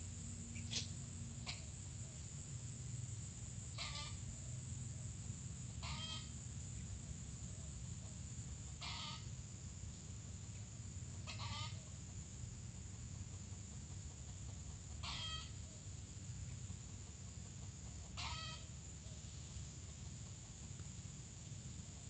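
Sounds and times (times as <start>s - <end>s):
junglefowl calls: 0.6s - 1.8s, 3.7s - 4.3s, 5.8s - 6.4s, 8.7s - 9.3s, 11.2s - 12.0s, 14.9s - 15.8s, 18.0s - 18.8s.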